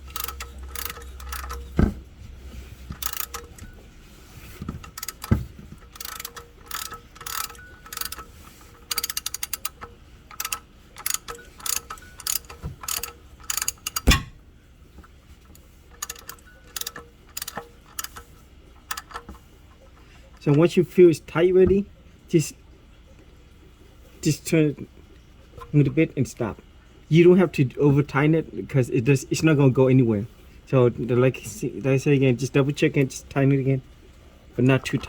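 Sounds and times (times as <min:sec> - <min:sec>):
ratchet wrench clicking: 0:00.0 - 0:01.8, 0:02.9 - 0:03.7, 0:04.8 - 0:14.3, 0:16.0 - 0:18.3, 0:18.9 - 0:19.3
tool knocking against metal housing: 0:10.4 - 0:14.4.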